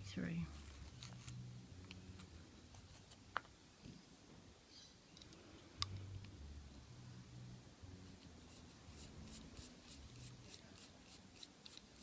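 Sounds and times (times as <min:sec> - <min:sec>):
light ticks and scratching: 0:08.2 - 0:12.0.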